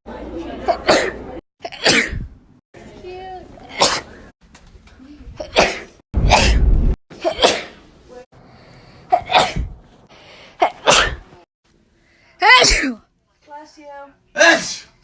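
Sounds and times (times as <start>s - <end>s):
person sneezing: 7.2s - 7.8s, 9.1s - 9.7s, 10.6s - 11.4s.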